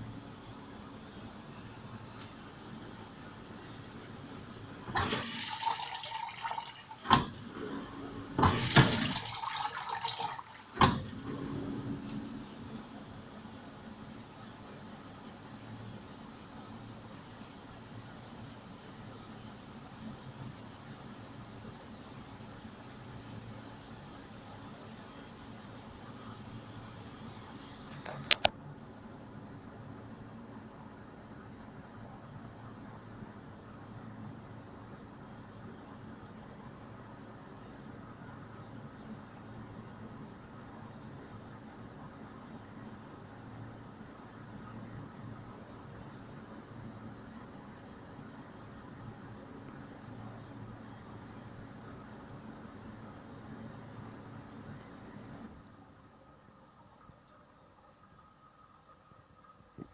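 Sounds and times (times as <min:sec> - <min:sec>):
water spraying in dishwasher: 0:04.9 - 0:07.4, 0:08.4 - 0:11.2
low hum: 0:11.0 - 0:13.8.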